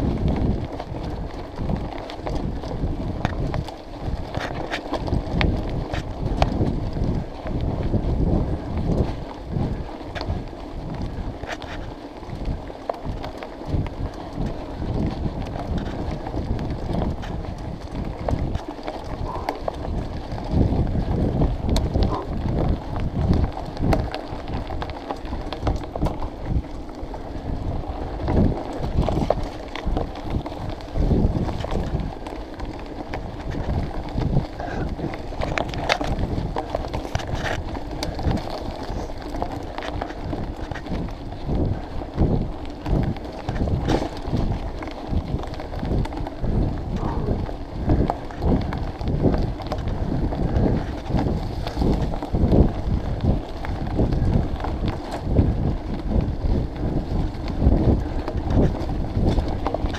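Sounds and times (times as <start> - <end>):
bike knocking and rattling: 0.0 - 59.9
wind buffeting microphone: 0.0 - 59.9.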